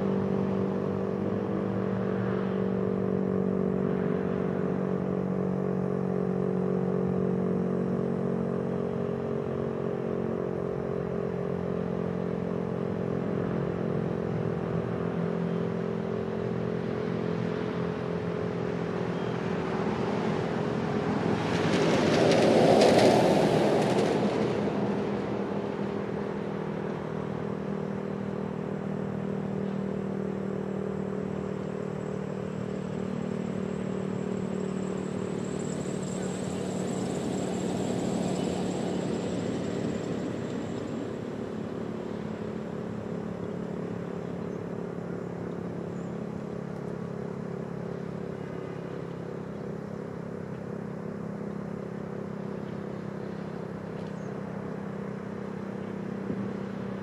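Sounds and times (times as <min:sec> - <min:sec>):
vehicle passing close by: 0:17.0 - 0:27.4, 0:32.9 - 0:43.7.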